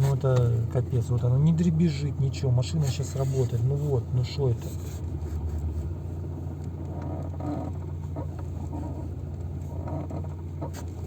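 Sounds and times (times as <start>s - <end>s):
car engine idling: 0.0s - 11.0s
clutch pedal squeaking: 6.6s - 11.0s.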